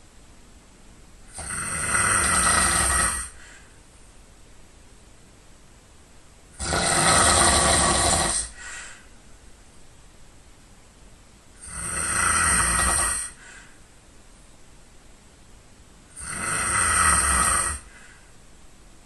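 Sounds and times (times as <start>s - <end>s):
person snoring loudly: 1.3s - 3.5s, 6.6s - 8.6s, 11.6s - 13.4s, 16.1s - 18.0s
faint breath: 2.8s - 4.0s, 8.2s - 9.3s, 13.2s - 14.0s, 17.8s - 18.4s.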